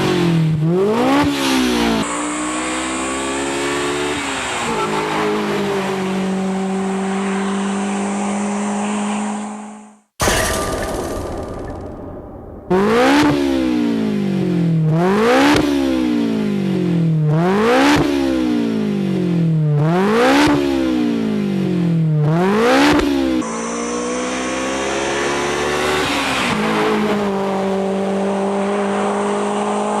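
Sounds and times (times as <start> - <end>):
car engine running steadily: 0.0 - 2.4, 12.5 - 24.1
car engine revving: 0.0 - 10.0, 11.0 - 30.0.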